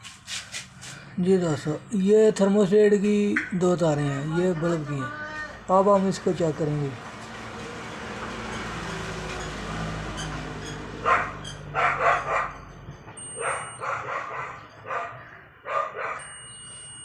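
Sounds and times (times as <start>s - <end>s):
dog barking: 11.0s - 12.6s, 13.4s - 16.3s
continuity tester beeping: 13.1s - 15.0s, 16.0s - 17.0s.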